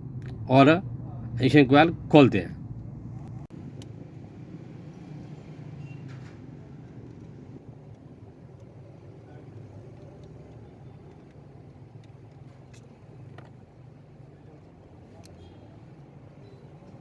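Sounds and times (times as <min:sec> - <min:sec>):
low mechanical hum: 0:00.0 - 0:03.5.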